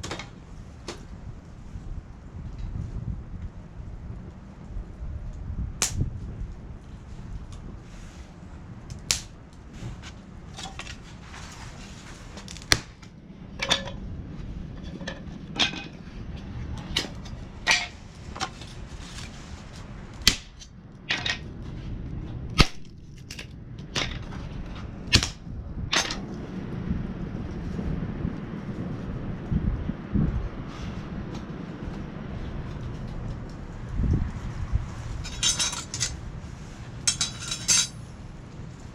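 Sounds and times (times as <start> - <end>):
metal parts knocking and clinking: 35.3 - 36.2, 37.1 - 38.0.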